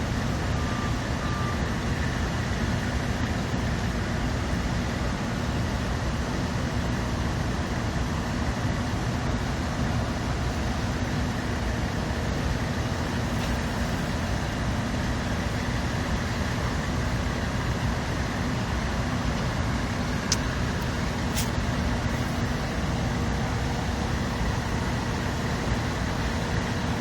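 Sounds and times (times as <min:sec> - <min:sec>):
heavy diesel engines rumbling: 0:00.0 - 0:27.0.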